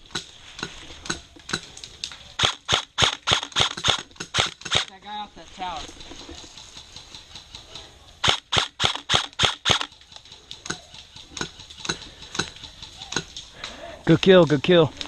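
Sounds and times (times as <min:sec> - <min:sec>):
airsoft rifle shots: 0:02.4 - 0:04.9, 0:08.2 - 0:09.9.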